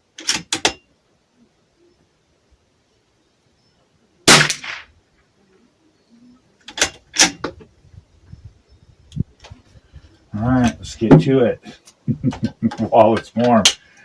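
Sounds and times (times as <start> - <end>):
rifle shot: 4.3 - 5.0.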